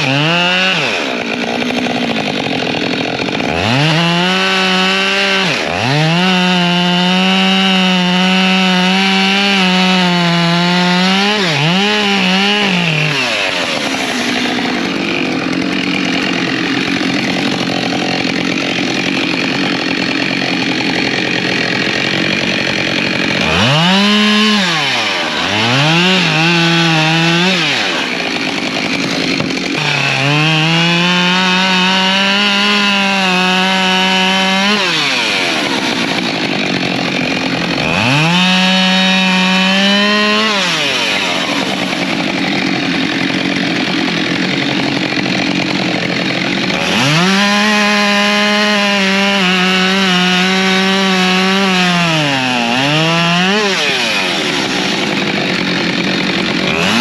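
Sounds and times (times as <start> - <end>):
chainsaw revving: 0.0 - 57.0.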